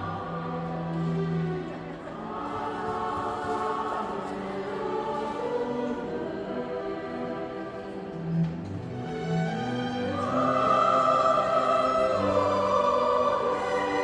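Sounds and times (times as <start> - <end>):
choir singing held chords: 0.0 - 14.0.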